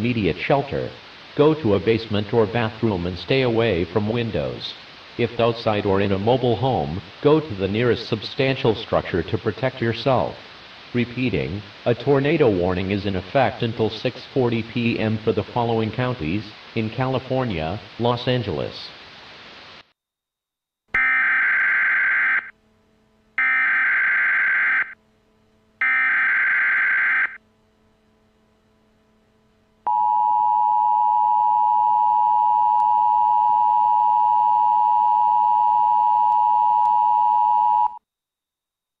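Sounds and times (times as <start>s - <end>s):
screeching data tone bursts: 25.8s - 27.4s.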